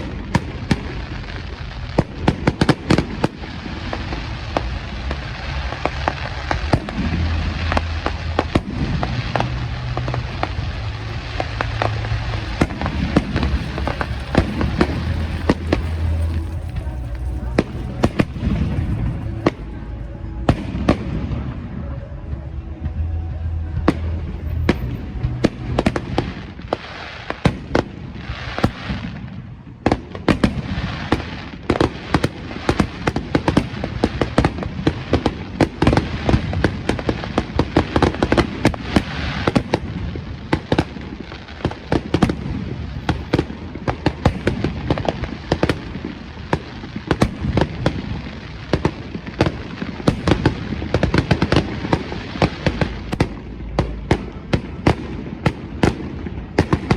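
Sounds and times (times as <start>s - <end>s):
fireworks bangs and crackles: 0.0s - 56.9s
steady rumble: 3.6s - 26.7s.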